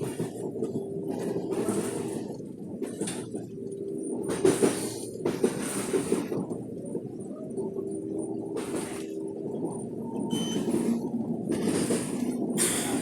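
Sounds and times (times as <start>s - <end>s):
electric train running hum: 0.0s - 13.0s.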